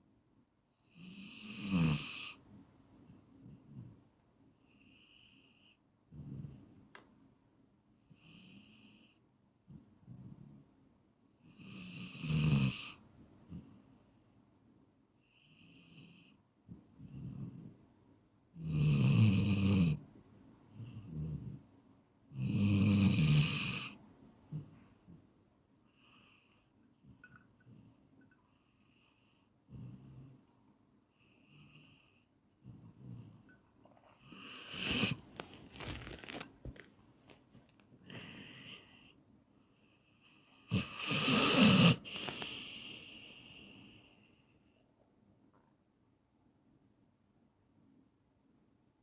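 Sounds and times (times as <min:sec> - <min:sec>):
person snoring: 0:22.4 - 0:24.7, 0:34.2 - 0:35.4, 0:40.7 - 0:43.9
soft breathing: 0:23.9 - 0:40.7, 0:42.0 - 0:44.9.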